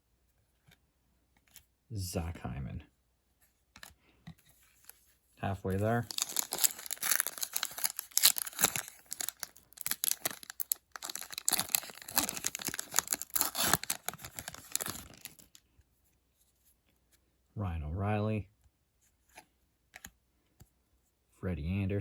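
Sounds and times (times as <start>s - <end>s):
foil wrapper tearing and crinkling: 5.7s - 15.6s.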